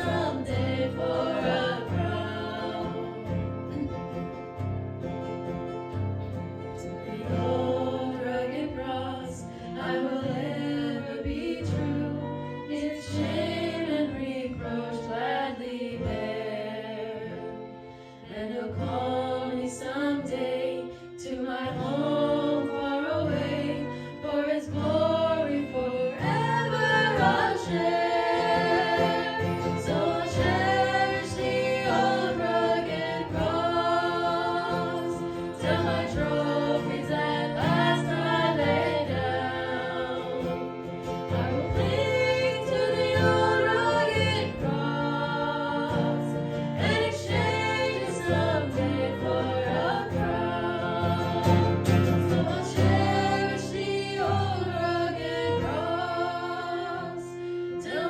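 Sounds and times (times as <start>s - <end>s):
small group singing a hymn: 0.0s - 3.9s, 7.0s - 58.0s
instrumental accompaniment: 20.2s - 58.0s.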